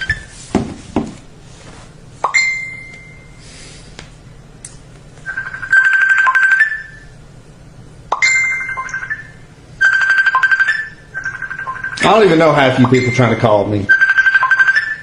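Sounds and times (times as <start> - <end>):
chime-like tone: 2.3 - 3.4, 8.2 - 9.4, 12.8 - 13.7
telephone trilling ring: 5.3 - 7.2, 8.2 - 15.0.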